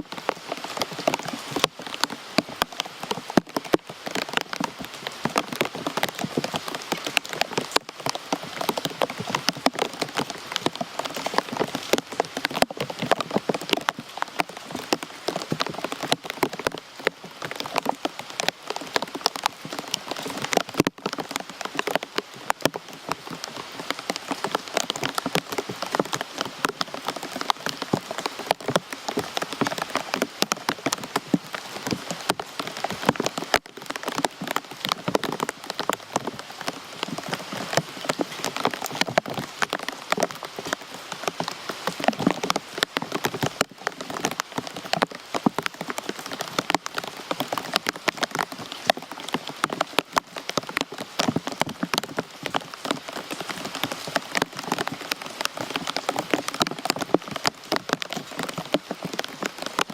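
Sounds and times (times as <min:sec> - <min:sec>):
rain falling: 0:00.0 - 0:59.9.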